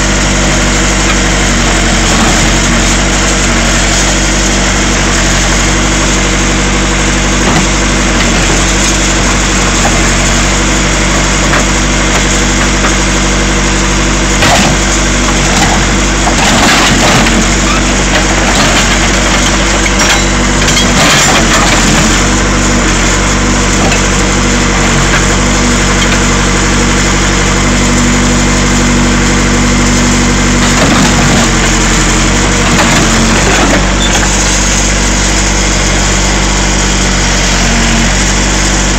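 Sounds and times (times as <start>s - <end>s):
backhoe diesel engine running: 0.0s - 38.9s
metal cracking and crunching: 14.3s - 24.2s.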